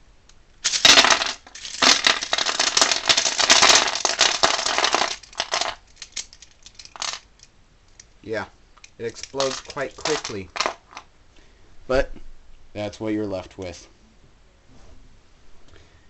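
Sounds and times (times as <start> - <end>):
plastic pieces clattering: 0.6 - 8.1, 8.8 - 11.0.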